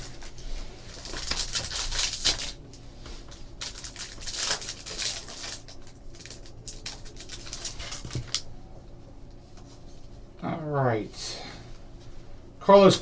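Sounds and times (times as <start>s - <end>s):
wrapper crinkling and rustling: 0.0s - 2.7s, 3.6s - 8.5s.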